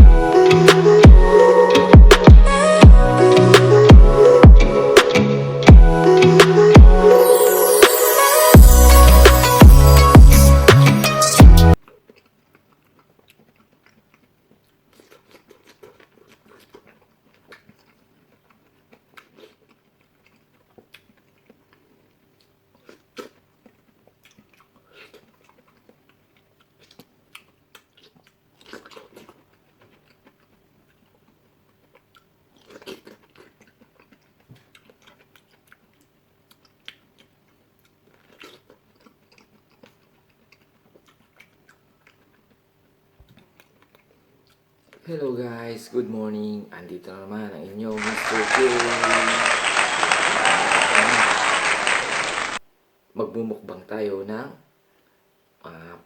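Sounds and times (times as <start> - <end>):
fruit crunching and chewing: 11.8 - 45.1.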